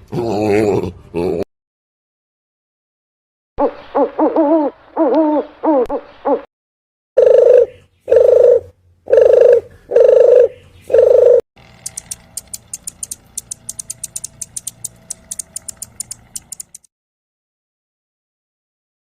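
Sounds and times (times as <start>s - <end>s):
rapid sharp clicks: 11.6s - 16.9s.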